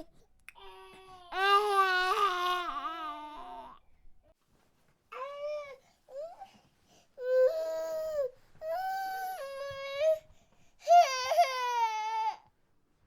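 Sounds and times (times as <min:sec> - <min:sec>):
infant crying: 0:00.6 - 0:03.8, 0:10.8 - 0:12.4.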